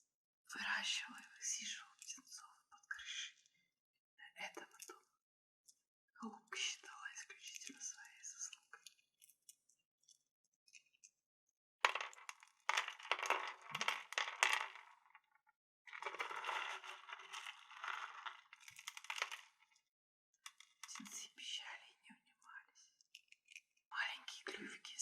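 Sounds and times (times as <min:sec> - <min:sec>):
crystals clinking together: 0:11.8 - 0:15.0, 0:15.9 - 0:19.6.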